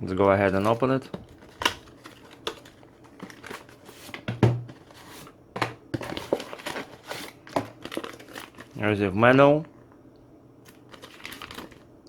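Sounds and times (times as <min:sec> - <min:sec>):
packaging rustling and crinkling: 0:00.3 - 0:09.0, 0:10.6 - 0:11.9
knocks on cardboard box: 0:04.3 - 0:04.8.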